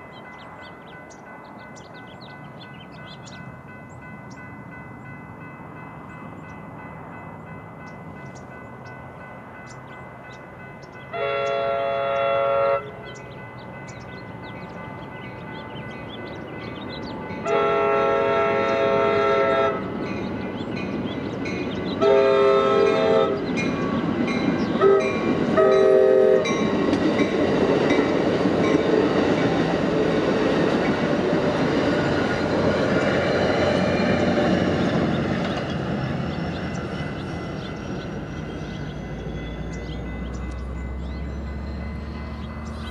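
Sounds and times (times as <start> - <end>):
train horn blasts: 11.1 - 13.2, 17.4 - 20.0, 22.0 - 23.9, 24.8 - 26.8
train wheels clacking on rails: 13.1 - 42.9.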